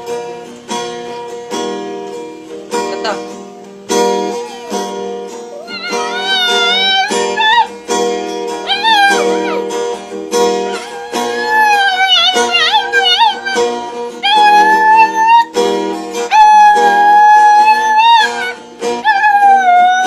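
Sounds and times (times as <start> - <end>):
plucked string music: 0.0 - 20.0
dog howling: 4.2 - 7.8, 8.6 - 9.9, 10.5 - 15.6, 16.3 - 20.0.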